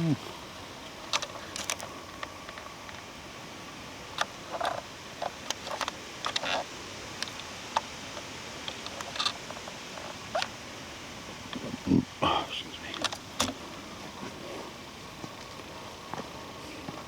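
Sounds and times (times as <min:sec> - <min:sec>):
light wind hiss: 0:00.0 - 0:17.0.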